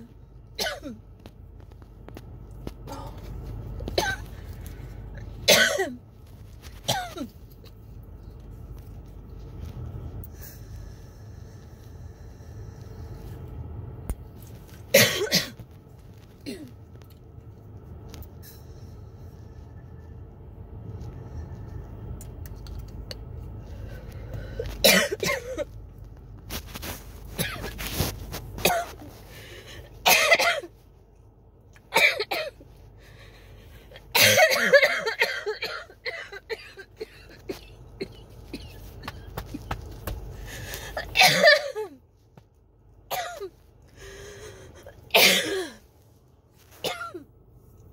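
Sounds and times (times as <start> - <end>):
low rumble with faint clicks: 0.0 - 45.2, 45.8 - 47.9
person coughing: 0.6 - 1.0, 3.9 - 4.4, 5.5 - 6.0, 6.8 - 7.4, 14.9 - 15.6, 16.4 - 16.7, 24.8 - 25.7, 27.4 - 27.7, 28.6 - 29.1, 30.0 - 30.7, 31.9 - 32.6, 34.1 - 39.7, 40.9 - 42.0, 43.1 - 43.6, 44.8 - 45.8, 46.8 - 47.2
noisy breath drawn in: 10.4 - 13.3.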